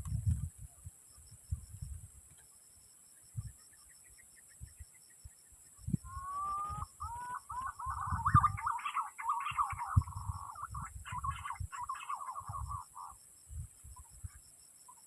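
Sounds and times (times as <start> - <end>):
irregular low thumps: 0.0 - 0.6
high insect drone: 0.0 - 15.0
pigeons warbling whistled calls: 6.1 - 13.1.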